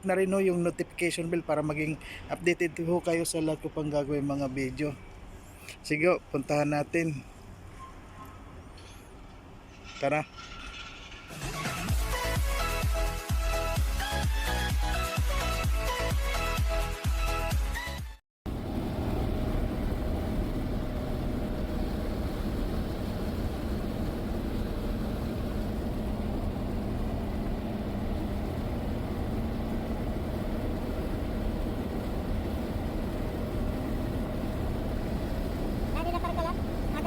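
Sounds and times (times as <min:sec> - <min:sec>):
vehicle engine and road noise: 0:00.0 - 0:11.9, 0:18.5 - 0:37.0
faint hum: 0:18.5 - 0:37.0.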